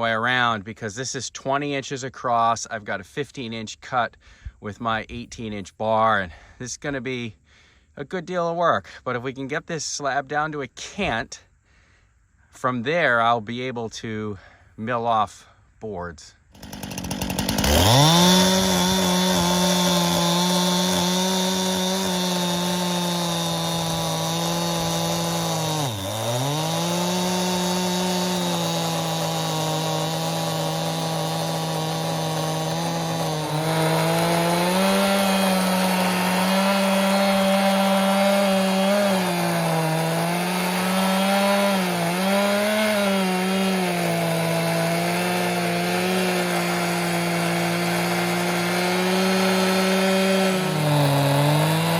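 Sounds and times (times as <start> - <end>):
chainsaw cutting log: 16.5 - 51.9.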